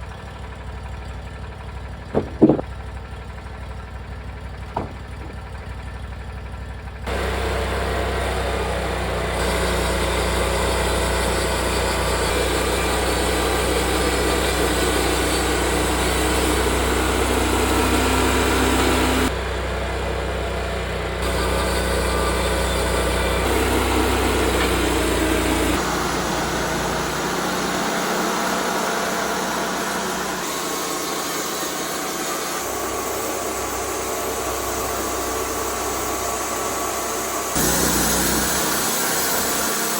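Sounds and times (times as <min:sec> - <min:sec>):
sawmill engine running under load: 0:00.0 - 0:39.9
band blade sawing through log: 0:02.1 - 0:02.7, 0:21.2 - 0:39.9.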